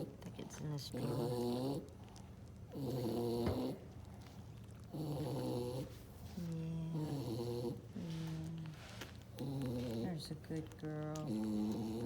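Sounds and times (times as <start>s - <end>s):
dog snoring: 0.9s - 1.9s, 2.7s - 3.8s, 4.9s - 6.0s, 6.9s - 8.1s, 9.4s - 10.2s, 11.2s - 12.0s.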